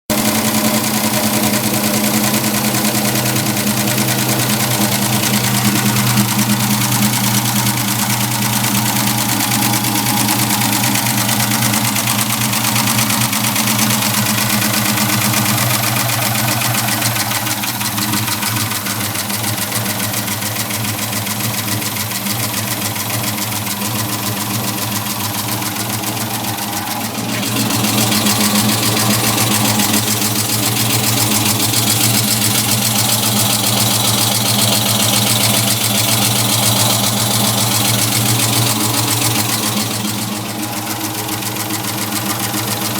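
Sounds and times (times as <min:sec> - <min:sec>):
engine idling: 0:00.0 - 0:42.9
fast even ticking: 0:00.1 - 0:42.9.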